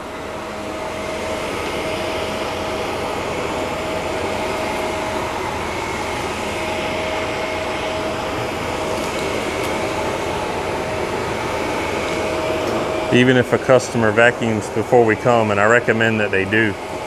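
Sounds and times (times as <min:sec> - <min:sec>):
vacuum cleaner on carpet: 0:00.0 - 0:17.0.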